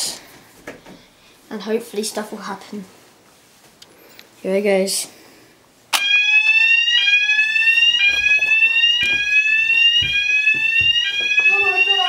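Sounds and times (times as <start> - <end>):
fire alarm rising tone: 6.0 - 12.0.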